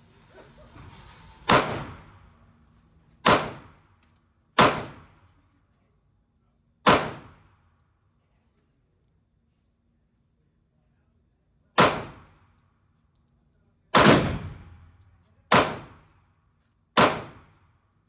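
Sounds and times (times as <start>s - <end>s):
gunshots with echo: 1.5s - 2.1s, 3.2s - 3.7s, 4.6s - 5.1s, 6.9s - 7.4s, 11.8s - 12.3s, 14.0s - 14.7s, 15.5s - 16.0s, 17.0s - 17.5s.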